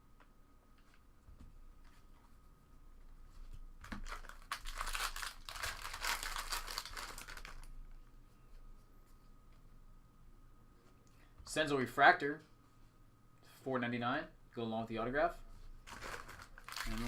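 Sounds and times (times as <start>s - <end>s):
foil wrapper crinkling and tearing: 3.9s - 7.7s, 15.9s - 17.0s.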